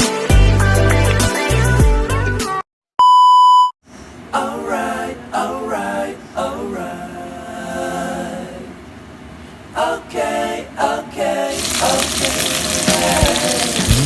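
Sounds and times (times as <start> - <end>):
person singing unaccompanied: 9.8 - 14.0
pop music with heavy bass: 11.8 - 14.0.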